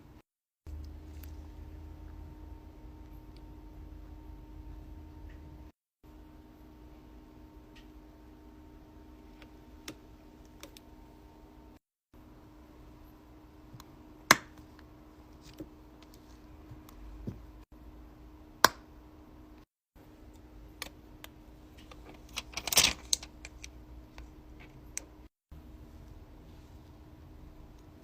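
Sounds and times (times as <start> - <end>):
faint steady hum: 0.0 - 28.0.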